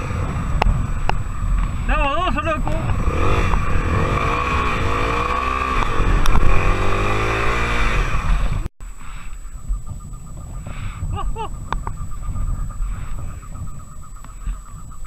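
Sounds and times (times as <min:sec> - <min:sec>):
motorcycle engine revving: 0:00.0 - 0:08.7.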